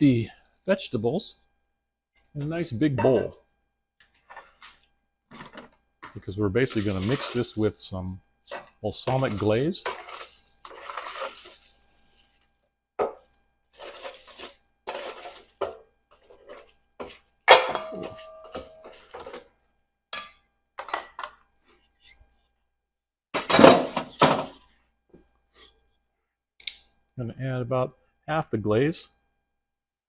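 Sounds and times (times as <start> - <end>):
ringing metal clank: 3.0 - 3.3, 17.5 - 19.0
utensil scraping metal pan: 6.7 - 7.7, 8.5 - 12.3, 13.0 - 19.4.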